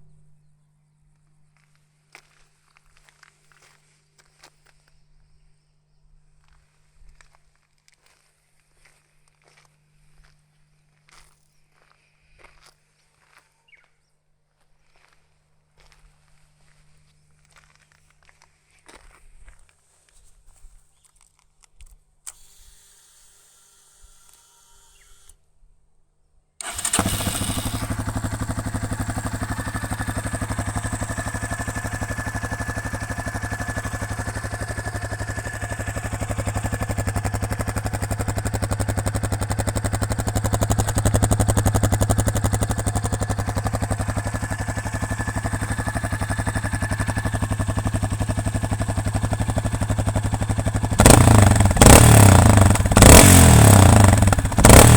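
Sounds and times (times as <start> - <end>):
hollow exhaust popping: 26.6 - 54.9
motorcycle engine idling: 26.6 - 54.9.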